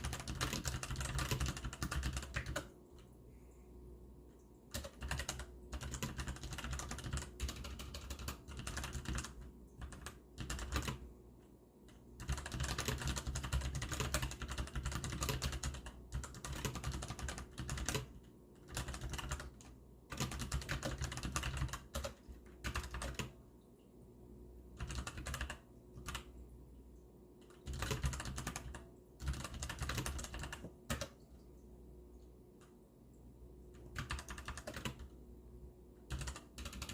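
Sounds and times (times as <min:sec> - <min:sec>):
mechanical keyboard typing: 0:00.0 - 0:02.8, 0:04.7 - 0:11.0, 0:11.9 - 0:23.4, 0:24.8 - 0:26.3, 0:27.4 - 0:31.2, 0:33.7 - 0:35.2, 0:36.1 - 0:36.9.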